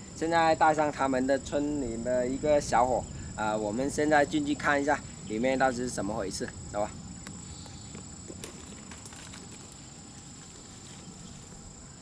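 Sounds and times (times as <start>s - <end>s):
footsteps on rough ground: 7.2s - 11.8s.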